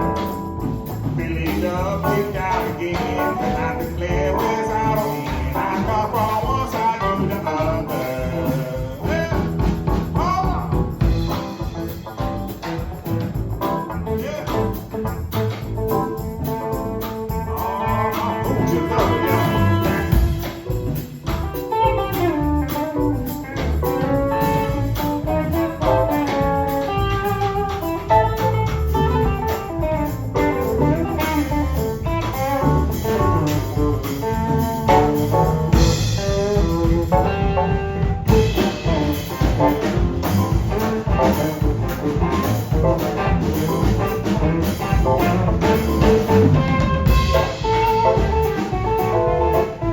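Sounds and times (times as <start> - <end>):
bass and drums: 0.0 - 49.9
guitar melody: 11.1 - 49.9.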